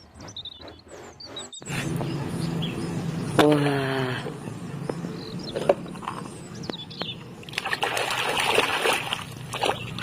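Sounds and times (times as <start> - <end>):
water splashing and trickling: 7.2 - 10.0.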